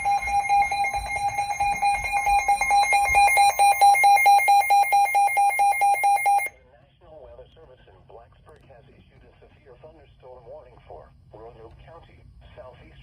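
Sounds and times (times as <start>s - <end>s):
rapid electronic alert beeping: 0.0s - 6.5s.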